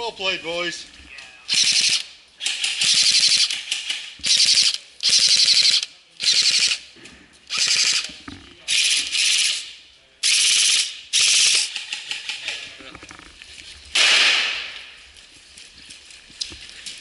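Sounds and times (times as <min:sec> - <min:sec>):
airsoft gun firing bursts: 0:01.5 - 0:06.8, 0:07.5 - 0:08.1, 0:10.2 - 0:12.4, 0:14.0 - 0:14.7.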